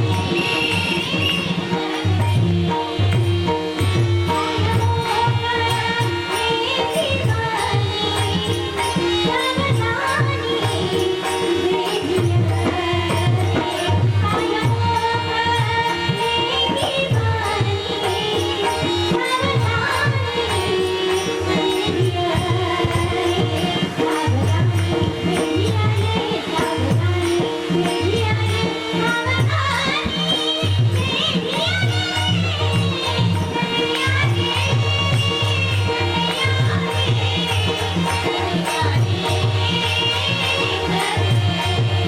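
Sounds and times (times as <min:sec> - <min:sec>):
hand drum rhythm: 0:01.8 - 0:42.0
girl singing: 0:09.0 - 0:37.5.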